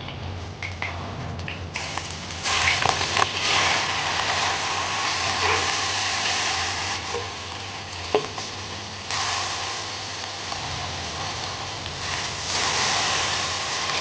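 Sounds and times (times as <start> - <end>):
food sizzling in a hot pan: 1.8 - 14.0.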